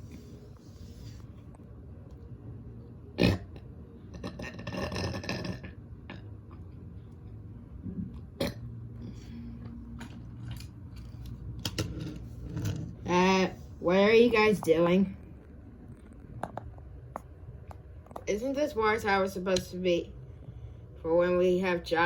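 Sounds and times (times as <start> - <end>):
long human burp: 3.2 - 3.5, 4.2 - 5.8.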